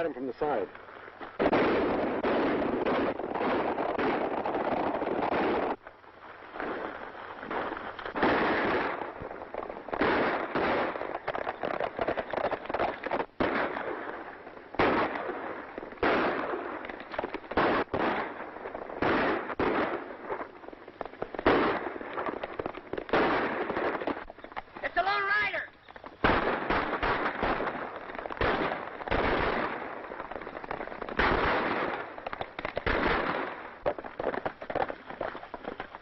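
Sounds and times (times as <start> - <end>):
rapid gunshot cracks: 1.3 - 5.8, 6.6 - 25.2, 26.0 - 36.0
loud gunshots: 1.4 - 5.8, 7.5 - 9.2, 9.9 - 14.2, 14.8 - 16.8, 17.5 - 20.4, 21.4 - 22.3, 23.0 - 24.2, 26.2 - 33.9.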